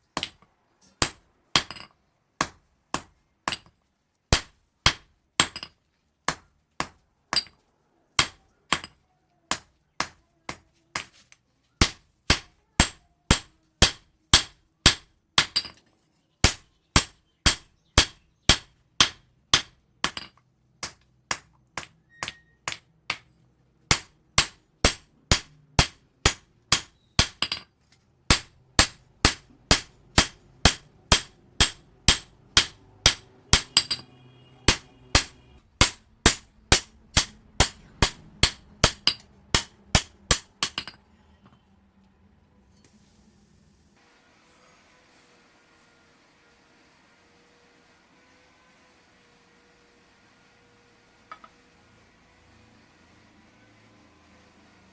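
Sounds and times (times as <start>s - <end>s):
hammer blows ringing on steel: 28.3s - 41.0s.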